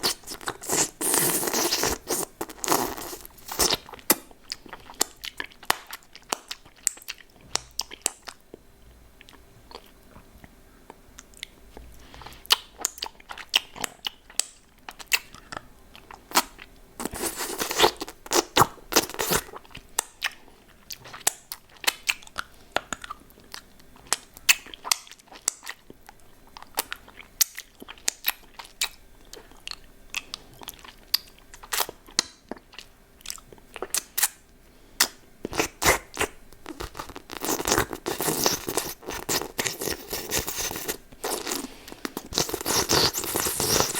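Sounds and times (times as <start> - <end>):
hard candy crunching: 0.0 - 8.3, 12.5 - 20.4, 35.0 - 43.9.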